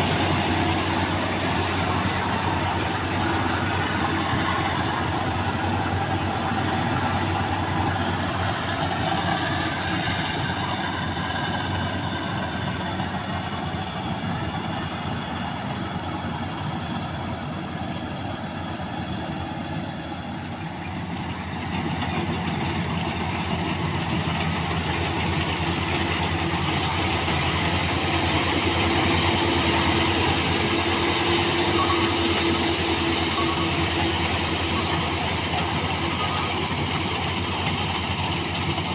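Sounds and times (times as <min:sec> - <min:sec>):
combine harvester engine drone: 0:00.0 - 0:38.9.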